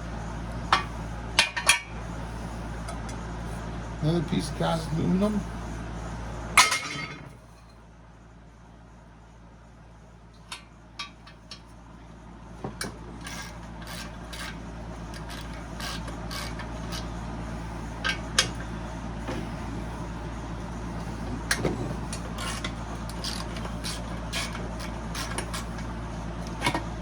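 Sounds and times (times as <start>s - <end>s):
steady low hum: 0.0s - 27.0s
metal scraping and rubbing: 21.0s - 25.7s.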